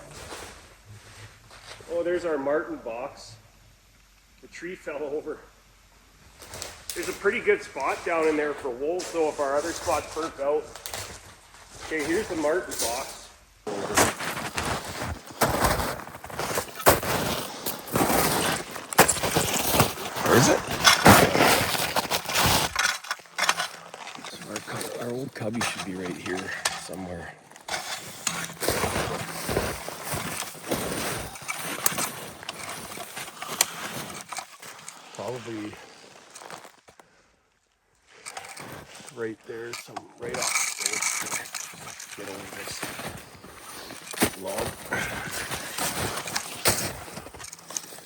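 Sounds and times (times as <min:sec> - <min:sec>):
footsteps crunching in snow: 0:00.0 - 0:02.1, 0:06.4 - 0:37.0, 0:38.3 - 0:48.0
twigs cracking: 0:11.9 - 0:37.0, 0:38.2 - 0:48.0.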